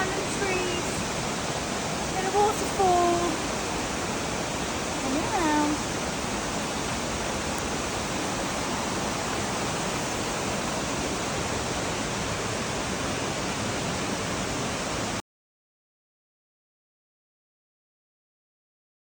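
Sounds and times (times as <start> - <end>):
waterfall rushing: 0.0 - 15.2.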